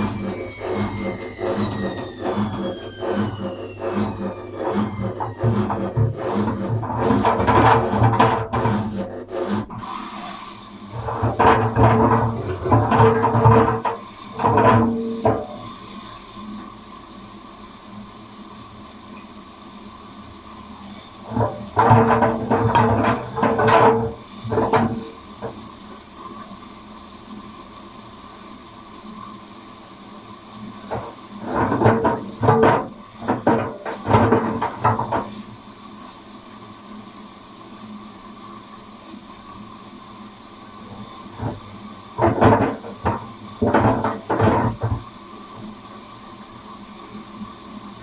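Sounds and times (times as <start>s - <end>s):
knocking and clattering in drum: 0.0s - 9.8s, 11.0s - 15.6s, 21.2s - 25.6s, 30.8s - 35.6s, 40.8s - 45.7s
washing machine hum: 0.0s - 48.0s.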